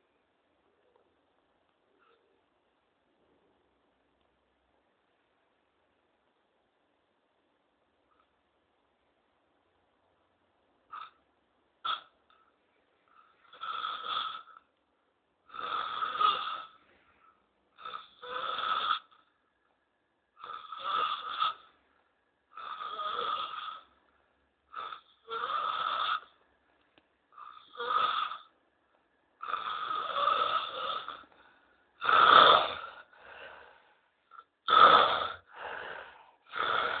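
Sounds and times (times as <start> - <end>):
person snoring loudly: 13.5 - 14.6, 15.5 - 16.8, 17.8 - 19.2, 20.4 - 21.7, 22.5 - 23.9, 24.7 - 26.3, 27.4 - 28.5, 29.4 - 31.3, 32.0 - 33.2, 34.3 - 37.0.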